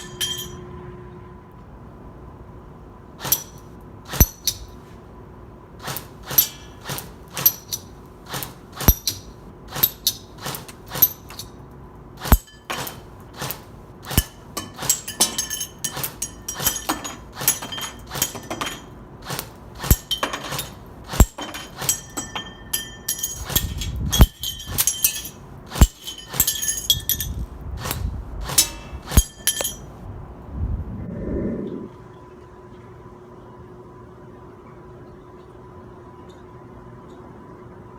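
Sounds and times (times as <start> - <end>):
pellets clinking on target: 0.0 - 0.6, 3.2 - 4.8, 5.8 - 11.6, 12.2 - 30.0.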